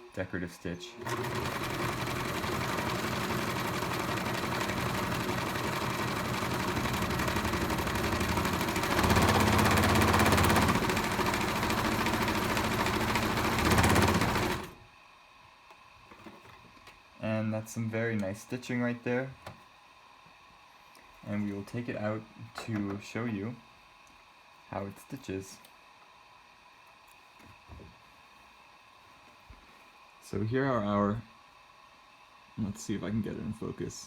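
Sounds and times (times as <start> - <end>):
sewing machine stitching: 1.0 - 14.8.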